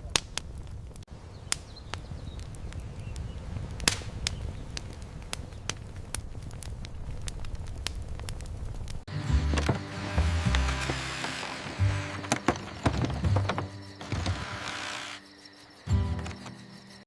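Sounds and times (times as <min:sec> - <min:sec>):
fire crackling and popping: 0:00.0 - 0:17.0.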